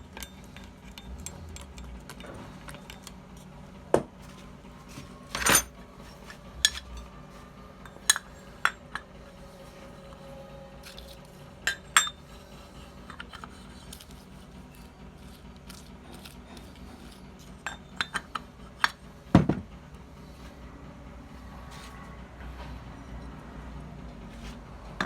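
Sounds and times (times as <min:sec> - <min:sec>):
metal tools clinking: 0:05.3 - 0:05.8, 0:06.6 - 0:07.1
dull knock: 0:19.3 - 0:19.7.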